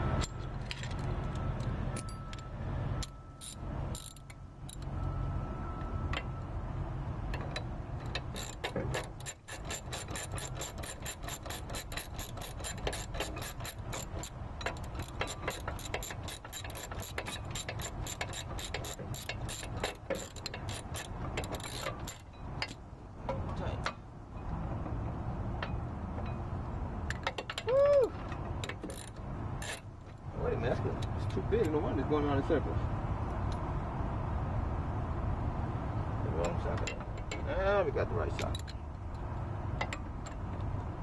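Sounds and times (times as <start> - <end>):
ratchet wrench clicking: 3.0 - 4.9, 7.3 - 22.8, 28.6 - 29.9.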